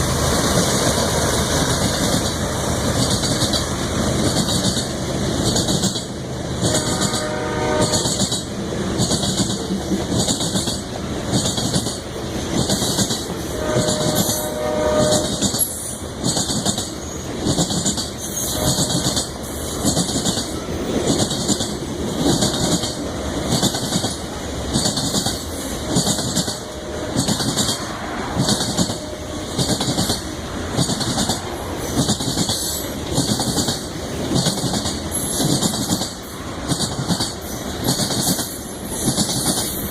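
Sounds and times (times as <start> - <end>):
train wheels clacking on rail joints: 0.0 - 39.9
locomotive air horn: 6.6 - 8.2, 13.4 - 15.5, 18.4 - 19.1, 26.4 - 27.3, 28.8 - 29.6.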